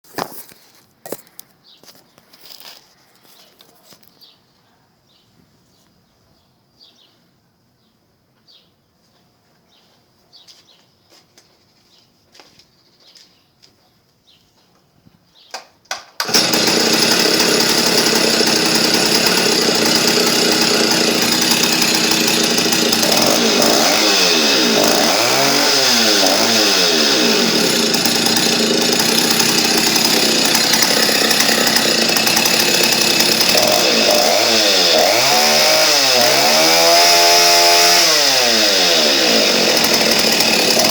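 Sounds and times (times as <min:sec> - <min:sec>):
chainsaw starter pulls: 0:16.0 - 0:40.9
chainsaw running loud: 0:16.2 - 0:40.9.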